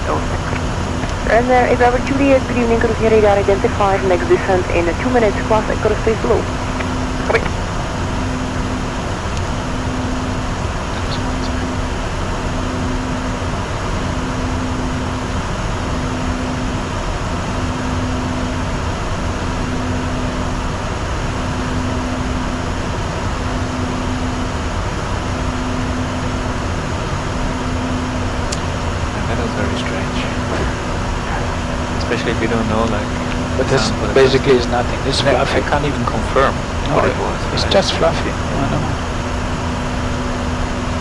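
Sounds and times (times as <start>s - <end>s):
airflow and air-conditioning rush: 0.0s - 23.3s, 24.5s - 41.0s
intermittent low tone: 0.0s - 41.0s
low hum: 0.0s - 41.0s.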